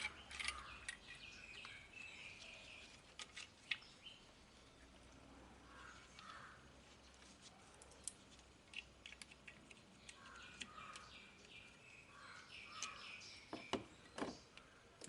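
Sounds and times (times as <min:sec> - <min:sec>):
faint bird chirps: 0:09.9 - 0:15.0.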